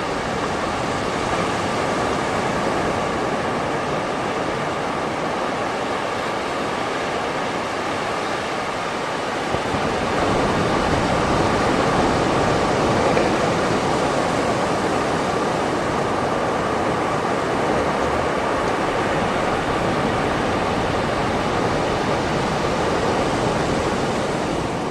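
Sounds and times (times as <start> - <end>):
sea surf washing onto beach: 0.0 - 24.9.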